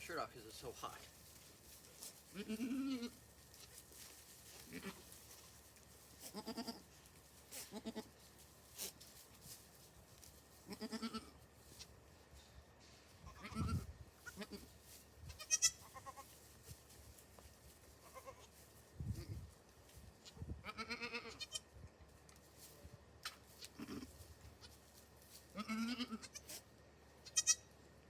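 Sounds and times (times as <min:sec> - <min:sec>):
goats bleating: 0:02.3 - 0:03.2, 0:04.6 - 0:05.1, 0:06.2 - 0:06.9, 0:07.6 - 0:08.2, 0:10.6 - 0:11.4, 0:13.2 - 0:14.7, 0:15.4 - 0:16.4, 0:18.0 - 0:18.5, 0:20.6 - 0:21.7, 0:23.6 - 0:24.8, 0:25.5 - 0:26.6, 0:27.2 - 0:27.7.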